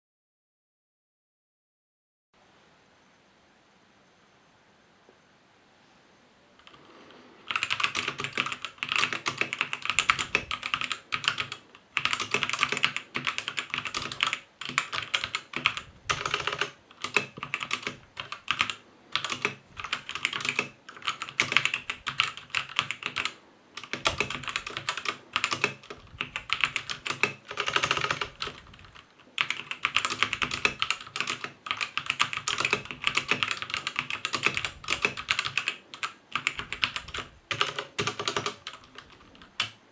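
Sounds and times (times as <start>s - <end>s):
mechanical keyboard typing: 7.5s - 39.8s.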